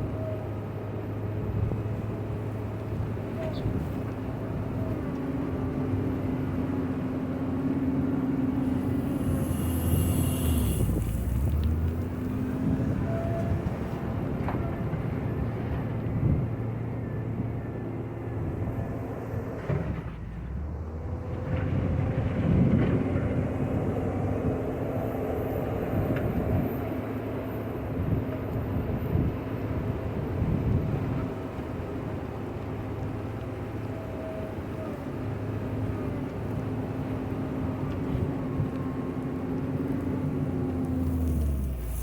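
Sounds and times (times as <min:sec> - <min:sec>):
diesel engine running under load: 0:00.0 - 0:42.0
brief hiss: 0:08.7 - 0:11.9, 0:40.9 - 0:42.0.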